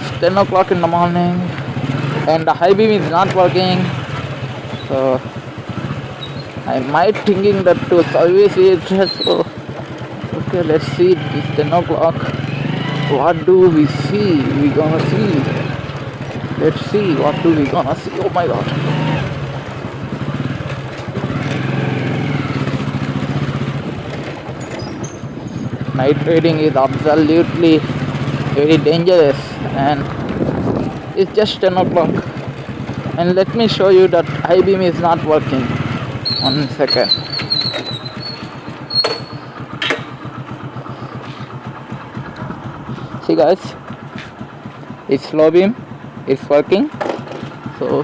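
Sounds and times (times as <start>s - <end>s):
motorcycle engine running: 0.0s - 48.0s.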